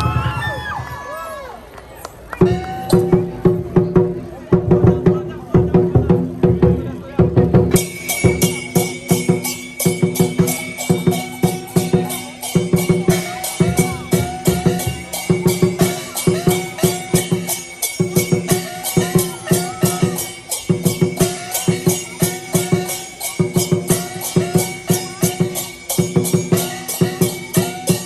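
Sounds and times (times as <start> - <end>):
large drum beating: 0.0 - 0.8, 2.4 - 28.0
cymbals clashing: 2.4 - 4.2, 7.4 - 28.0.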